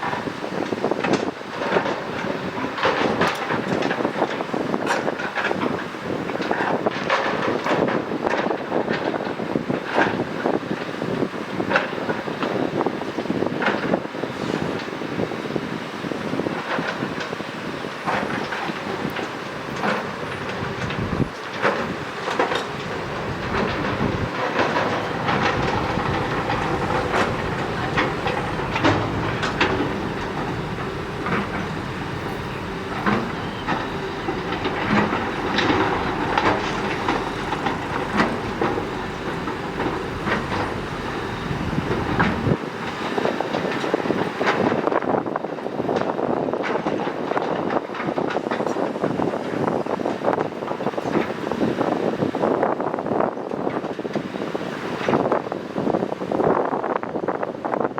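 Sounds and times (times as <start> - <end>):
excavator diesel engine running: 15.9 - 44.5
metal clanks and knocks: 18.1 - 42.6.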